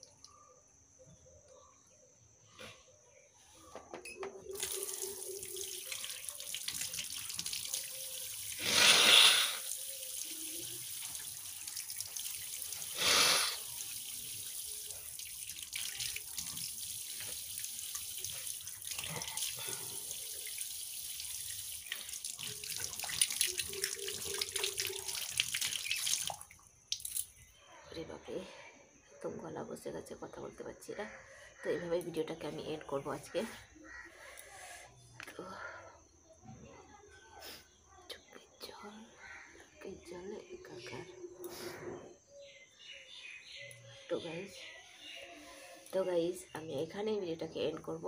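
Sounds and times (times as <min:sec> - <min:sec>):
water running from a tap: 0:04.4 - 0:27.3.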